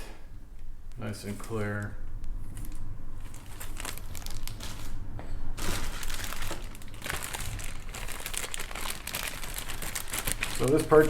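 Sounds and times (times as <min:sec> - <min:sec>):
plastic bag crinkling: 0:02.5 - 0:05.0, 0:05.6 - 0:11.0.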